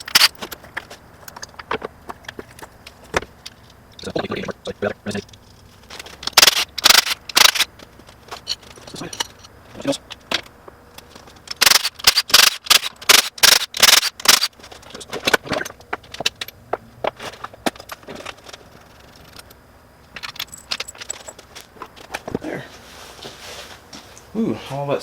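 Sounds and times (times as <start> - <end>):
metal tools clinking and rattling: 5.1 - 22.4.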